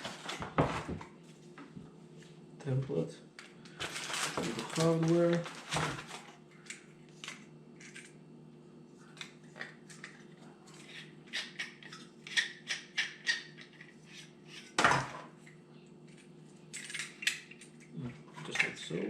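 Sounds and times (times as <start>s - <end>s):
loud crinkle or knock: 3.8s - 6.4s.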